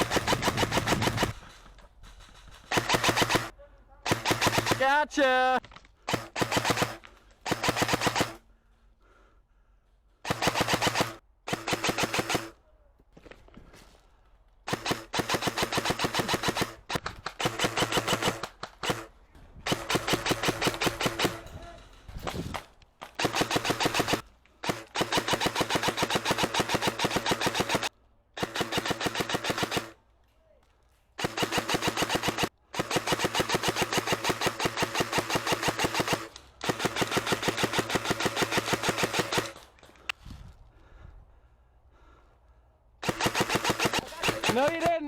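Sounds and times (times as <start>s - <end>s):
airsoft rifle bursts: 2.3s - 8.4s, 10.2s - 12.6s, 14.6s - 30.1s, 31.2s - 40.1s, 43.0s - 45.0s.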